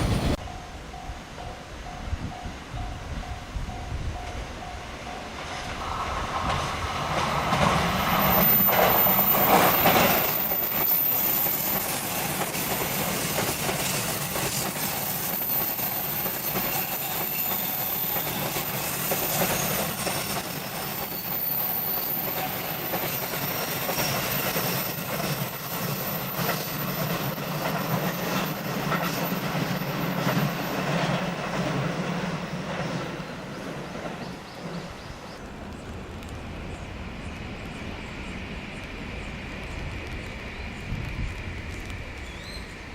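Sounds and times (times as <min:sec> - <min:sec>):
train passing: 0:00.0 - 0:42.9
wheels clacking over rail joints: 0:05.2 - 0:36.9.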